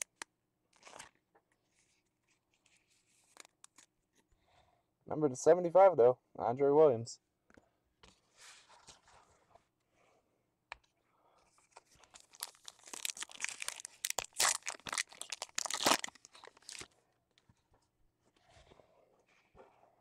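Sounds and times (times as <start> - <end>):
foil wrapper tearing and crinkling: 12.0 - 16.9.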